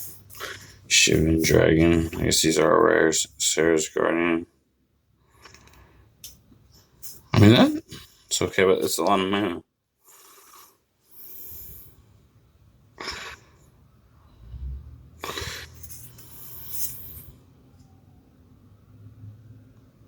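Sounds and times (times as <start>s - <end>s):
breaths through the nose: 10.0s - 12.1s, 14.4s - 17.4s.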